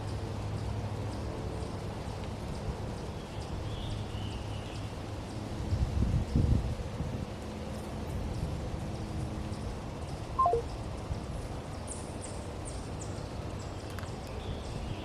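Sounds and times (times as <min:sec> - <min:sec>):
wind on microphone: 0:05.7 - 0:07.3
electronic beep falling notes: 0:10.4 - 0:10.7
bird chirping: 0:10.4 - 0:10.8.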